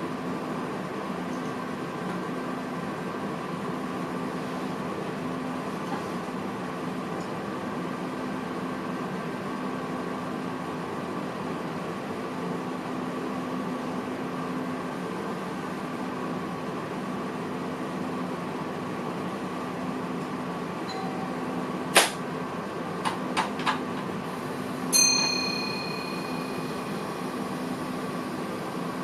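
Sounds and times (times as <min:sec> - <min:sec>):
train cab hum: 0:20.5 - 0:29.0
ringing tone: 0:20.9 - 0:21.4, 0:24.9 - 0:27.3.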